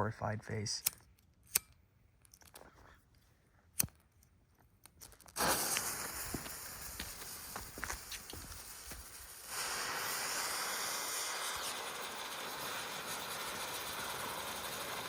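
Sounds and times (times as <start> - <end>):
sharp click: 0.8 - 2.6
firework hissing: 5.3 - 15.0.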